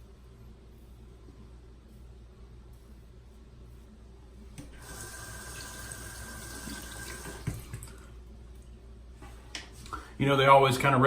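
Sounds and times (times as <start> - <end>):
tap water running into sink: 4.7 - 8.0.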